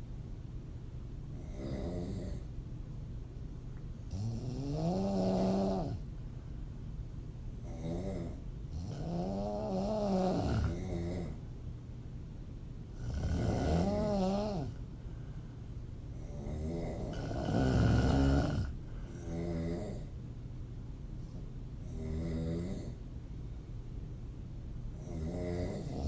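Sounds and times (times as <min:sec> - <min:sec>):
woman snoring: 0:01.4 - 0:02.5, 0:04.1 - 0:06.0, 0:07.6 - 0:11.4, 0:13.0 - 0:14.8, 0:16.2 - 0:20.1, 0:21.9 - 0:23.0, 0:25.0 - 0:26.0.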